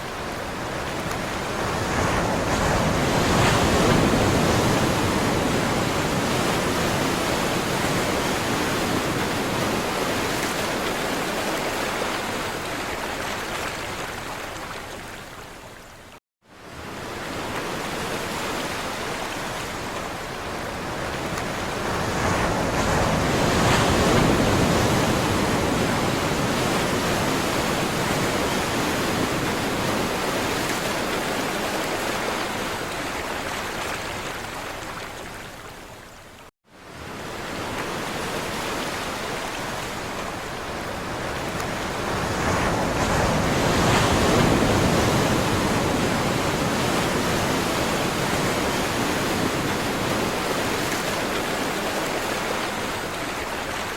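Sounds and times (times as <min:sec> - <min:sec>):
sea surf waves washing in: 0:00.0 - 0:14.6, 0:16.6 - 0:35.1, 0:36.8 - 0:53.9.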